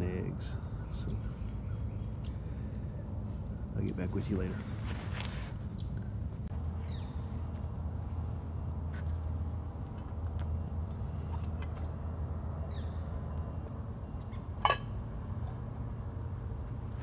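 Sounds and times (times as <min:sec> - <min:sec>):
bird chirps: 0:00.4 - 0:04.2, 0:06.8 - 0:07.4.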